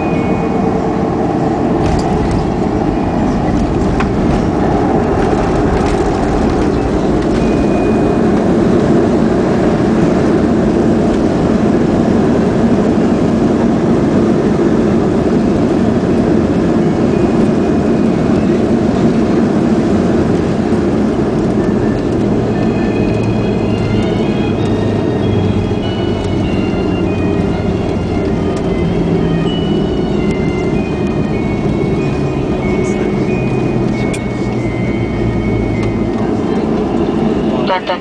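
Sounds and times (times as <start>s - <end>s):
jet engines running: 0.0s - 38.0s
landing gear wheels rumbling: 1.8s - 10.4s.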